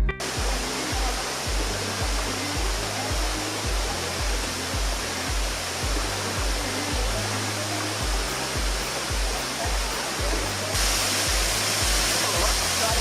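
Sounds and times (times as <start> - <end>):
background music with pulsing bass: 0.0 - 13.0
water rushing in a stream: 0.2 - 13.0.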